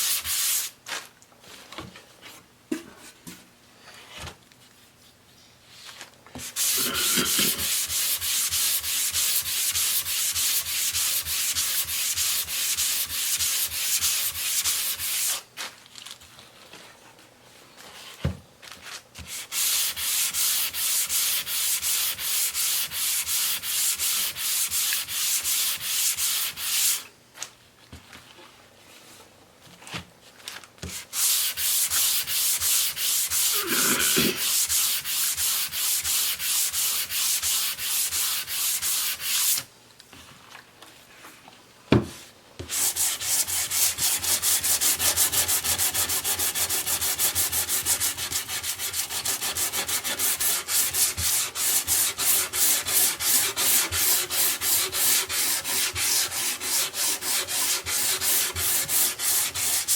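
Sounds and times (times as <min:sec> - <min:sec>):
hand sanding wood: 0:00.0 - 0:00.8, 0:06.4 - 0:15.4, 0:19.2 - 0:27.1, 0:30.8 - 0:39.7, 0:42.6 - 0:59.9.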